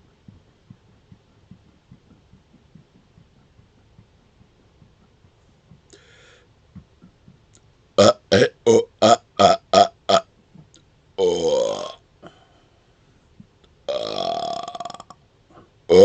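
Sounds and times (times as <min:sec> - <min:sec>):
man burping: 0:08.0 - 0:10.3, 0:11.2 - 0:12.0, 0:13.9 - 0:15.2.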